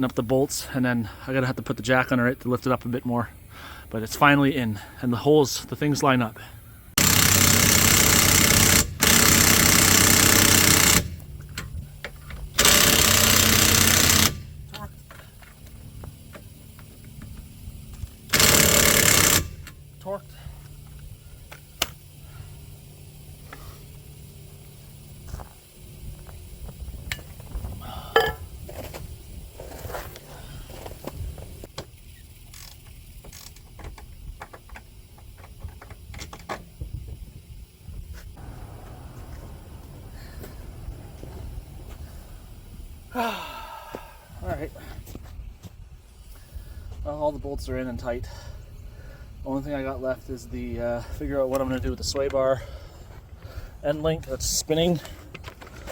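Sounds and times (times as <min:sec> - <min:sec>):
impact wrench hammering: 0:07.0 - 0:11.3, 0:12.6 - 0:14.8, 0:18.3 - 0:19.8
ratchet wrench clicking: 0:07.0 - 0:27.5, 0:31.0 - 0:37.5
loud metallic clicks: 0:18.3 - 0:19.8.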